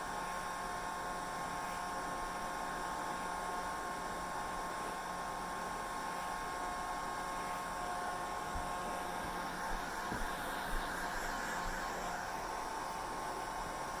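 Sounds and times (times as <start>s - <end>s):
hair dryer running: 7.8s - 14.0s.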